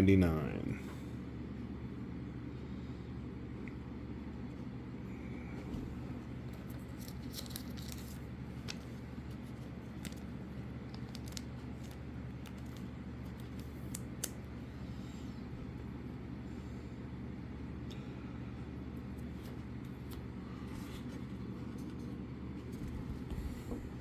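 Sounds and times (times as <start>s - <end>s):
low background hum: 0.0s - 24.0s
cards and plastic sleeves rustling: 6.4s - 14.6s.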